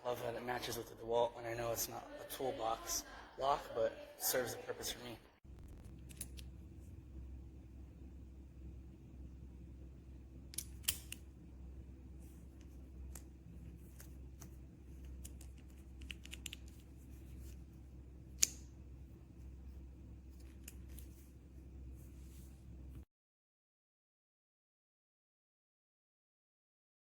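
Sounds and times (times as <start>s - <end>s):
steady low hum: 0.0s - 23.0s
padlock metallic clicks: 10.5s - 11.2s, 13.9s - 16.8s.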